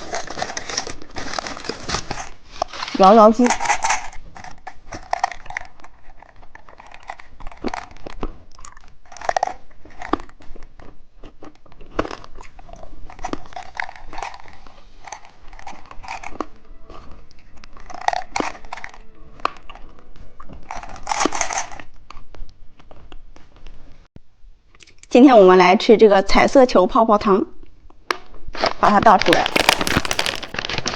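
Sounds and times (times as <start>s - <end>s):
person chewing crunchy candy: 3.6s - 19.0s, 29.5s - 30.6s.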